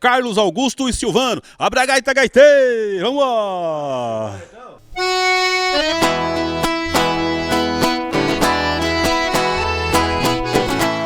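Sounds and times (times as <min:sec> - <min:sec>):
accordion: 0:04.9 - 0:11.0
strummed guitar with beat and bass: 0:05.0 - 0:11.0.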